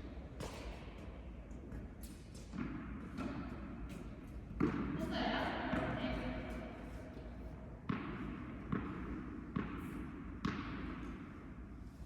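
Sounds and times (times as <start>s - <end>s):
tennis ball hits with reverberation: 2.4s - 3.8s, 4.5s - 5.0s, 7.8s - 11.6s.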